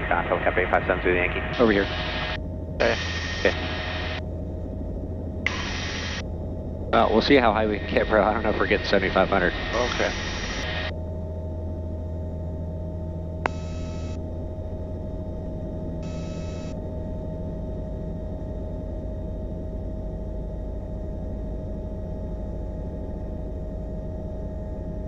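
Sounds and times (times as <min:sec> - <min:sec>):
helicopter cabin hum and rumble: 0:00.0 - 0:25.0
short buzzy tones: 0:01.5 - 0:04.2, 0:05.5 - 0:06.2, 0:13.4 - 0:14.2, 0:16.0 - 0:16.8.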